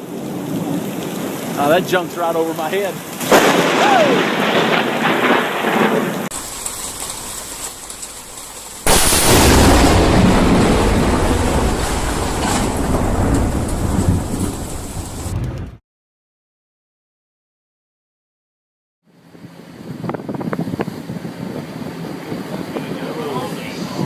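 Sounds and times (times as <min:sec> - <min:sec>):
rain falling: 0:00.0 - 0:15.6
loud thunderclap rumbling: 0:00.0 - 0:15.8.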